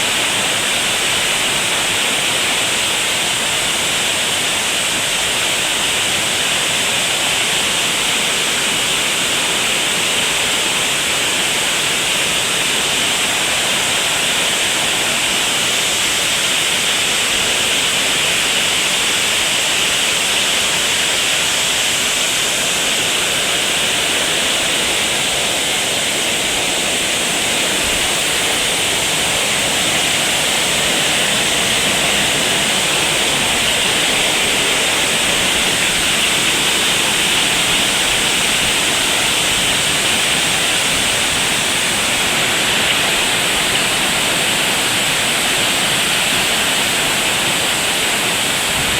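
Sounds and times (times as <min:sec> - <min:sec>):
heavy rain falling: 0:00.0 - 0:48.9.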